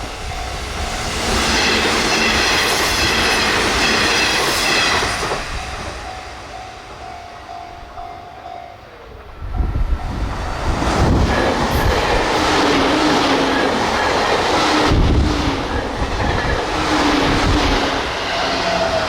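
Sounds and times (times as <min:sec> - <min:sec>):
crossing warning bell ringing: 0:00.0 - 0:14.7
electric train rumbling: 0:00.0 - 0:19.0.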